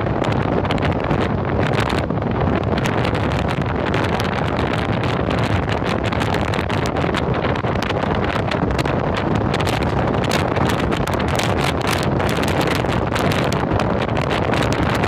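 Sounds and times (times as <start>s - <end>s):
vehicle road noise: 0.0s - 15.0s
wind on microphone: 0.0s - 15.0s.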